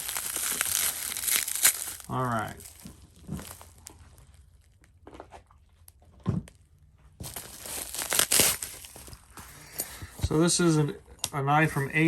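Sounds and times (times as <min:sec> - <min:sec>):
packaging crinkling: 0:00.0 - 0:05.0, 0:07.2 - 0:10.2.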